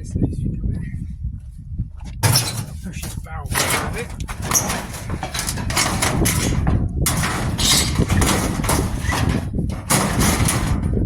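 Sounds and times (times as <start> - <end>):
barrel scraping across truck bed: 2.2 - 11.0
metal knocks and clanks: 2.2 - 11.0.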